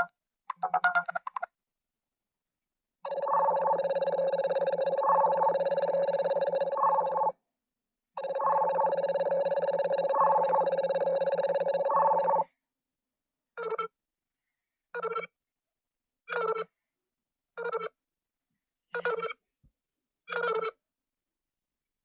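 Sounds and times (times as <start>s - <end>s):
phone ringtone: 3.0s - 7.3s, 8.2s - 12.4s, 19.0s - 19.4s.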